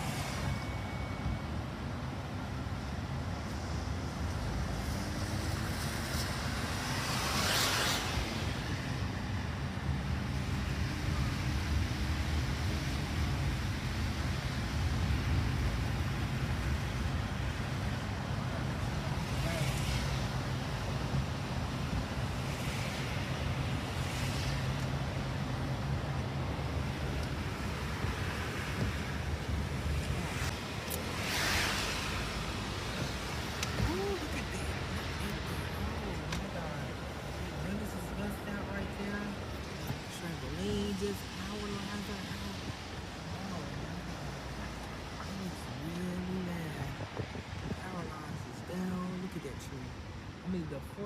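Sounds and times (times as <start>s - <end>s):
vehicle rumble and road noise: 0.0s - 51.0s
rushing whoosh: 25.9s - 37.7s.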